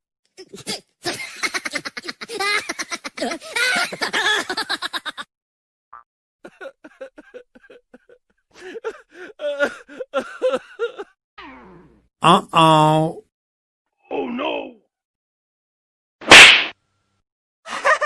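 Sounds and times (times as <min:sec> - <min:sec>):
rapid giggling: 0:00.4 - 0:05.2.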